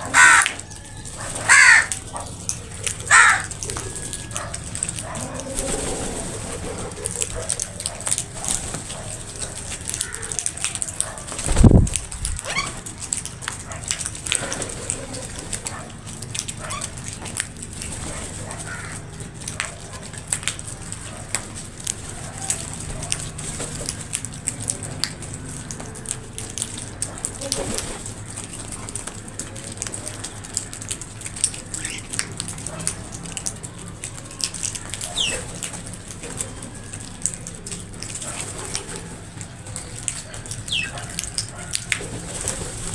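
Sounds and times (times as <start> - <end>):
crows calling: 0.0 - 5.8, 9.9 - 10.6, 18.5 - 19.2.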